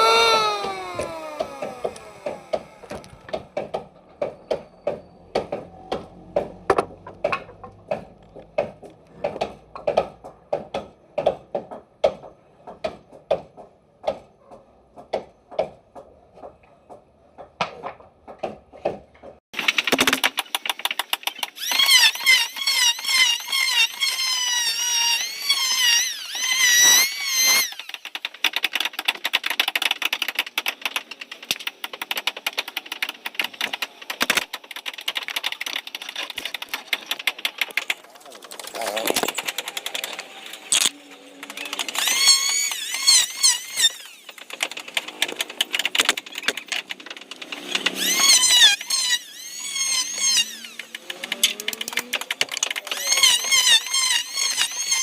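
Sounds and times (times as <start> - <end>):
power tool whining: 0.0 - 3.5, 21.4 - 28.1, 38.9 - 55.0.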